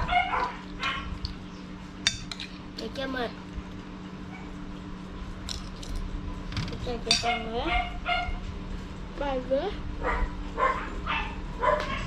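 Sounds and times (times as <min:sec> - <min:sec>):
steady low hum: 0:00.0 - 0:12.0
voices: 0:06.7 - 0:08.0.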